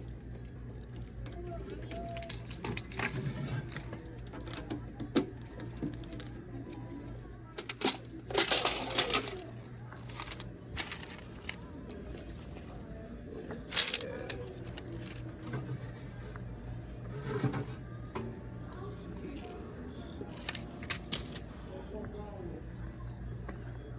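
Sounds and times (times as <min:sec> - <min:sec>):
gumballs clinking and rattling: 0:07.7 - 0:11.6.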